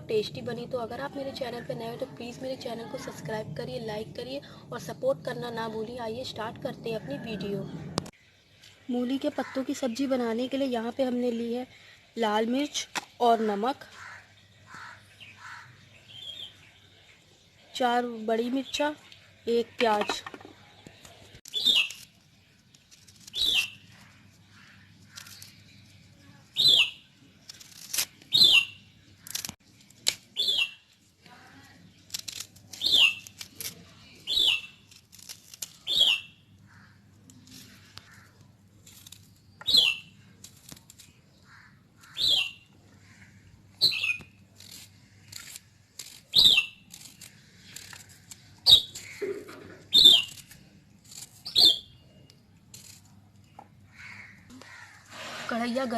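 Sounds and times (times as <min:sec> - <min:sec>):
small bird chirping: 0:12.6 - 0:17.4, 0:20.6 - 0:29.6, 0:30.3 - 0:55.0.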